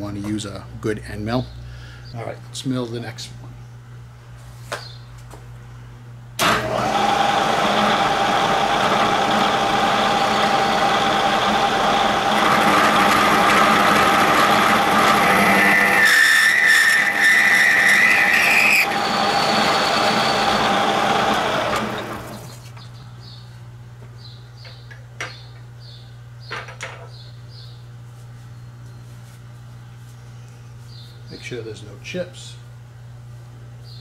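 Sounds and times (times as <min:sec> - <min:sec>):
milling machine cutting steel: 0:06.4 - 0:22.5
cutter squealing: 0:06.4 - 0:22.6.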